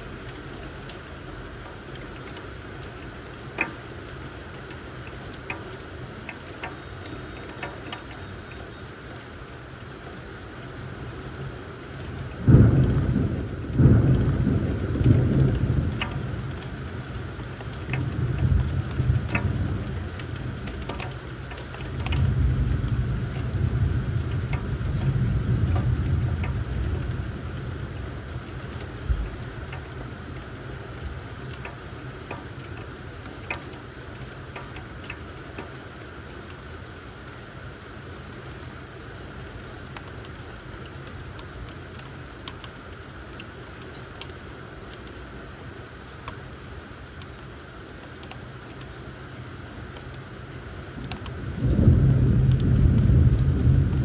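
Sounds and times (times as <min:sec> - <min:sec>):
raindrops ticking: 0:00.0 - 0:54.0
steady rain: 0:00.0 - 0:54.0
thunder rumbling: 0:12.0 - 0:30.1, 0:50.9 - 0:54.0
loud thunder clap: 0:12.5 - 0:16.6, 0:51.4 - 0:54.0.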